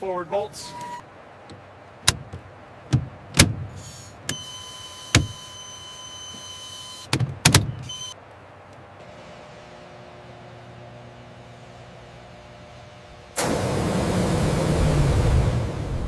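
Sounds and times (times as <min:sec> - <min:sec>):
electric whine: 0:09.0 - 0:16.0.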